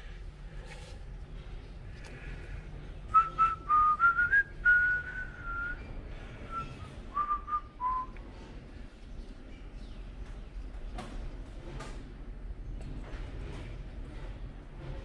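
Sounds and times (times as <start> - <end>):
person whistling a tune: 3.1 - 5.8, 6.5 - 8.2.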